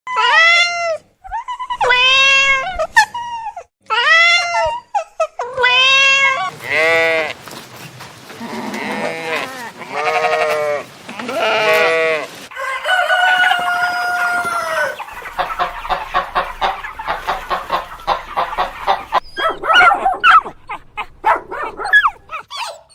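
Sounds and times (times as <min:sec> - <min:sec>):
animals bleating: 0:05.6 - 0:12.5.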